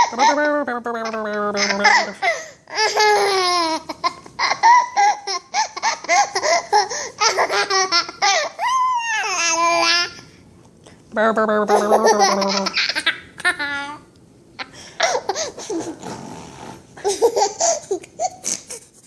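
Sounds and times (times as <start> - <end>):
baby laughing and squealing: 1.6 - 10.1, 17.0 - 18.9.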